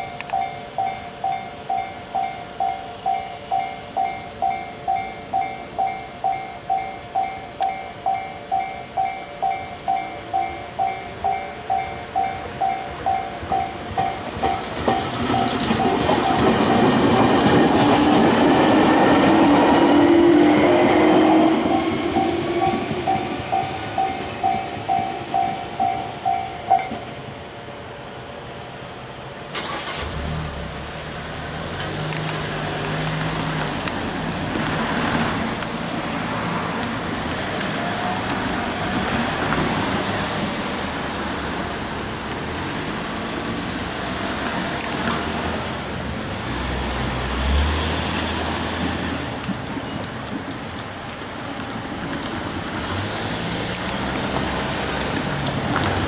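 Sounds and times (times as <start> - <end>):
level crossing warning bell: 0.0 - 17.2, 18.6 - 27.4
train passing: 0.0 - 56.0.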